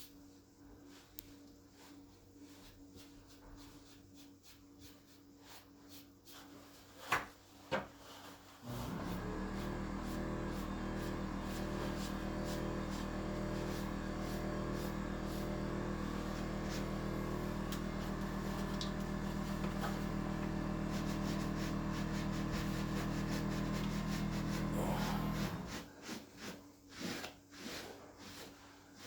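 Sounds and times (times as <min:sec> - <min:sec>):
power tool motor humming: 0:08.7 - 0:25.9.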